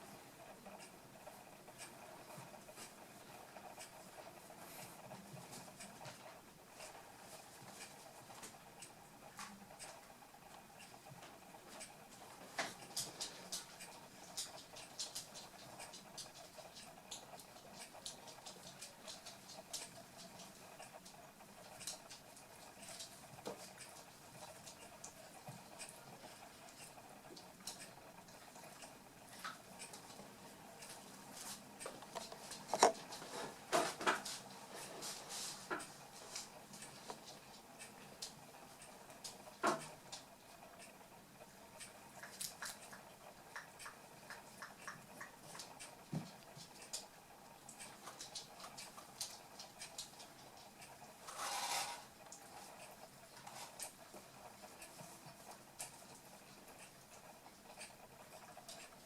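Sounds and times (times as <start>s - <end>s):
puppies pattering and scuffling: 4.0s - 8.6s, 11.2s - 26.4s, 29.3s - 38.4s, 42.2s - 56.6s.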